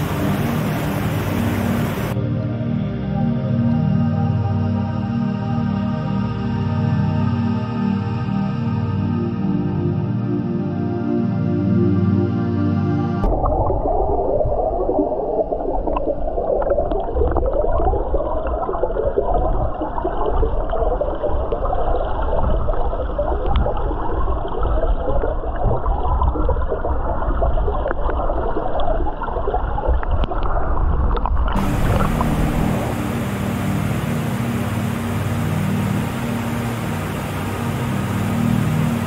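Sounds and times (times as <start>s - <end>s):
rushing hiss of falling water: 0.0s - 2.2s, 31.6s - 39.0s
waterfall churning and gurgling: 0.0s - 2.2s, 31.5s - 39.0s
low rumble: 13.2s - 19.8s, 30.8s - 39.0s.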